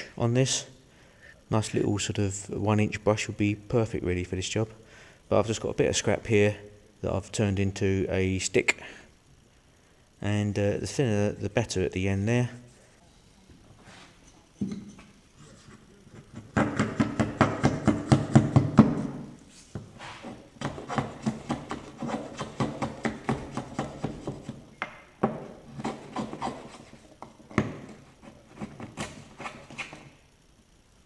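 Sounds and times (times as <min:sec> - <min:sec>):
wooden stick scraping a pot: 0:25.7 - 0:27.0.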